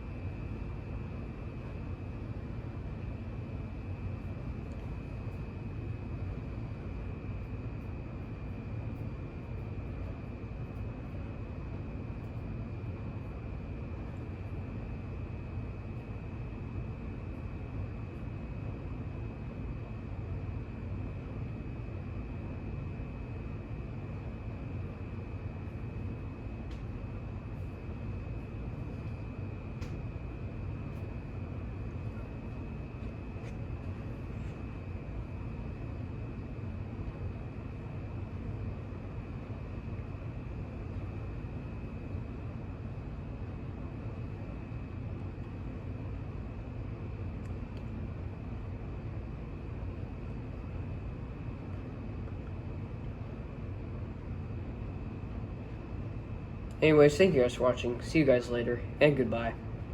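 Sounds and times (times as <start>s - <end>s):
ceiling fan air rumble: 0.0s - 59.9s
thin high whine: 56.7s - 59.8s.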